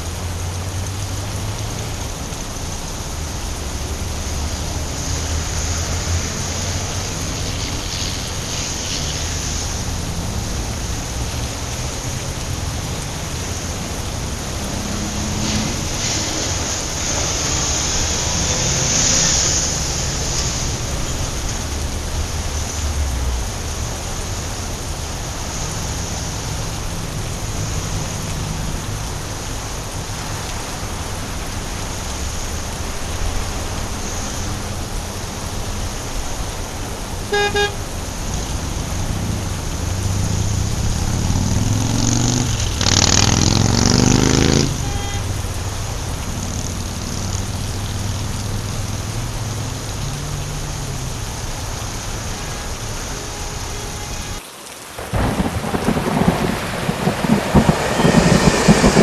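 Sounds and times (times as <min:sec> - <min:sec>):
steady rain: 0:00.0 - 0:59.0
traffic on wet street: 0:00.0 - 0:59.0
vehicle swishing past on wet road: 0:00.0 - 0:59.0
car horn toot: 0:37.3 - 0:37.8, 0:44.8 - 0:45.3, 0:57.7 - 0:59.0.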